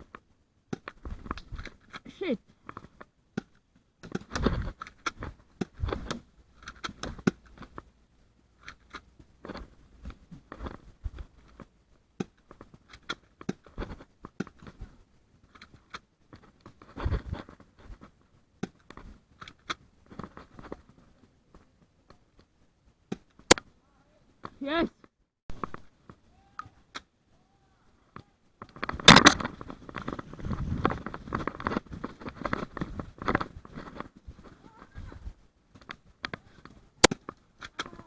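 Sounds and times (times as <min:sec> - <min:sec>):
clicks and knocks: 0:28.6 - 0:34.1
footsteps: 0:28.6 - 0:36.8
clothing and gear rustling: 0:28.6 - 0:38.0.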